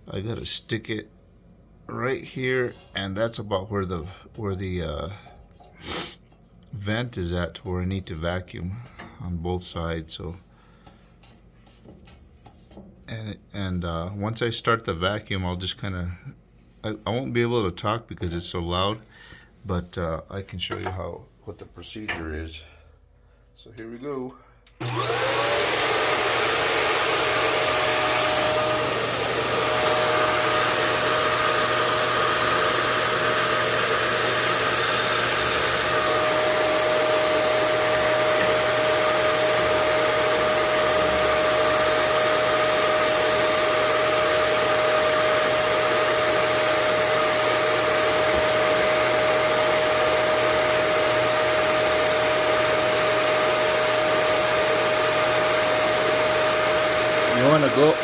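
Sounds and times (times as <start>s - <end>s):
vacuum cleaner whining: 24.8s - 58.0s.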